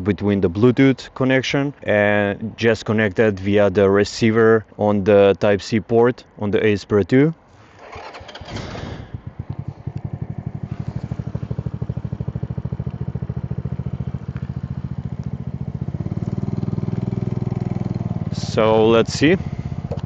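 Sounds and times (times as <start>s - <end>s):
scooter engine running: 7.8s - 20.0s.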